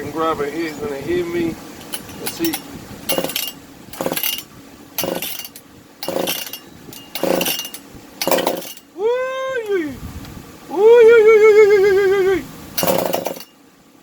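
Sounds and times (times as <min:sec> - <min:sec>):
starter rope pulls on engine: 0:01.4 - 0:08.8, 0:12.8 - 0:13.5.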